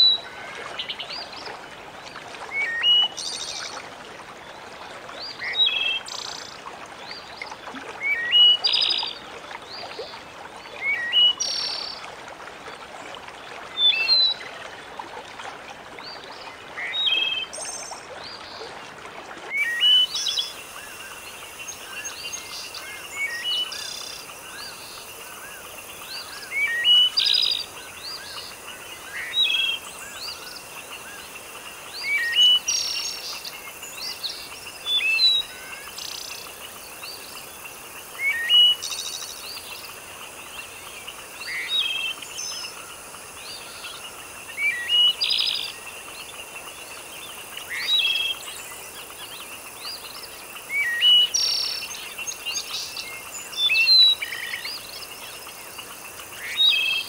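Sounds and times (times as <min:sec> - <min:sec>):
steady background hiss: 0:16.0 - 0:57.0.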